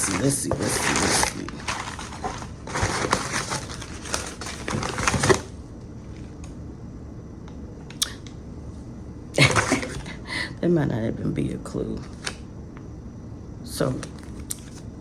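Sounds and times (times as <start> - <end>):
packaging rustling and crinkling: 0.0 - 6.3.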